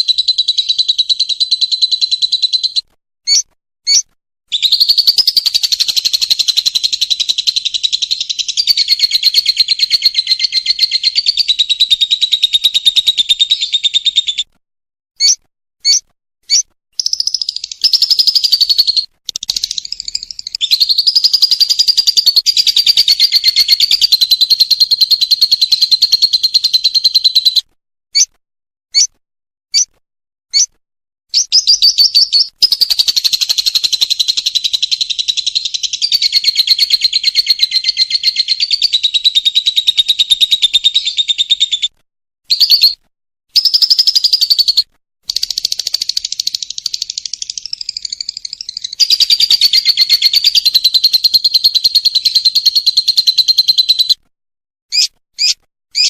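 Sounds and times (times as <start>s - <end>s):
lovebird chattering trill: 0.0s - 14.4s, 15.2s - 27.6s, 31.3s - 41.9s, 43.6s - 54.2s, 54.9s - 56.0s
lovebird short chirps: 0.2s - 14.4s, 15.2s - 27.6s, 28.9s - 29.9s, 31.3s - 39.0s, 54.9s - 56.0s.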